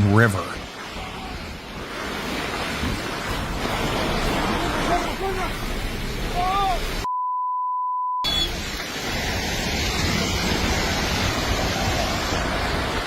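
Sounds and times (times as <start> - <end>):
landslide rushing roar: 0.0 - 7.0, 8.3 - 13.0
censor bleep: 7.1 - 8.6.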